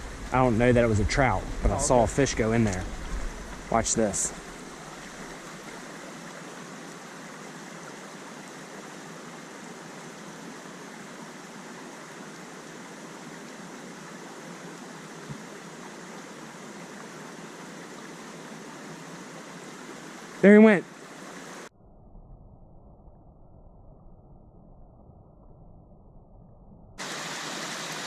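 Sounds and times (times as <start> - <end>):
stream flowing over rocks: 0.0 - 21.7, 27.0 - 28.0.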